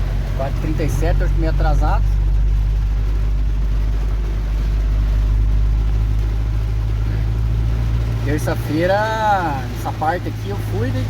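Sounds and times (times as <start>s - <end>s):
engine and road noise drone: 0.0s - 11.0s.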